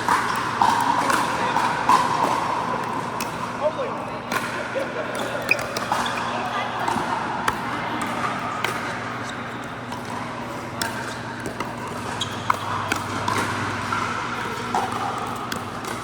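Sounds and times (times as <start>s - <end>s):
ball bouncing on court: 5.2s - 16.0s.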